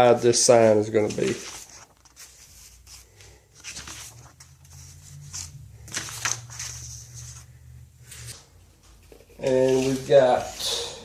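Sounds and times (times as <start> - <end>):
paper rustling and crinkling: 1.0 - 7.6, 9.0 - 10.6.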